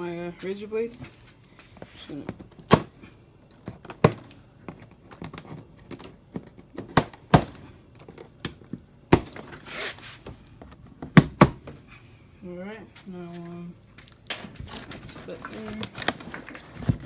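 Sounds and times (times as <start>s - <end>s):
cardboard scraping and tearing: 9.4s - 10.2s, 14.4s - 17.0s.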